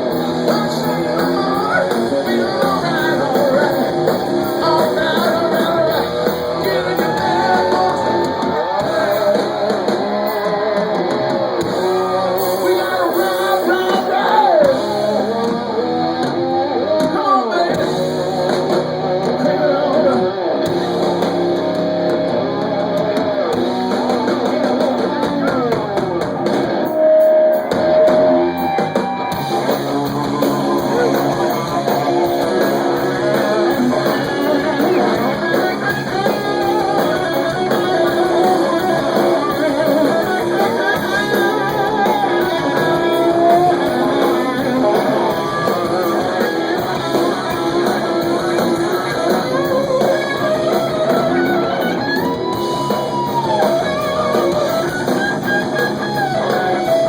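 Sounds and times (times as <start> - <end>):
electric guitar bending notes: 0.0 - 57.0
rock band playing: 0.0 - 57.0.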